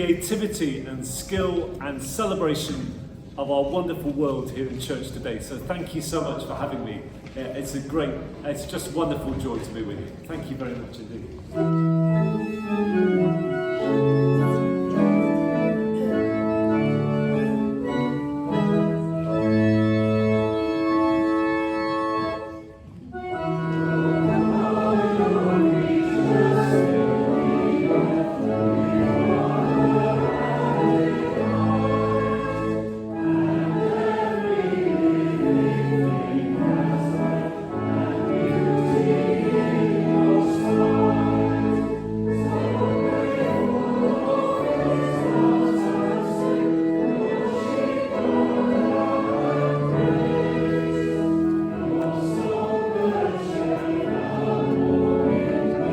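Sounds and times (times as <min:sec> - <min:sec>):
organ: 0:08.0 - 0:55.9
choir singing a hymn: 0:11.6 - 0:55.9.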